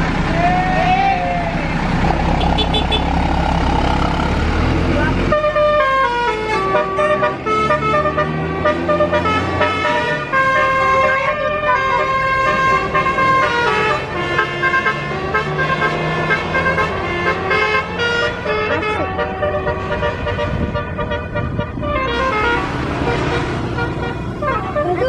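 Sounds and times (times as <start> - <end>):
musical air horn playing a tune: 5.3 - 25.0.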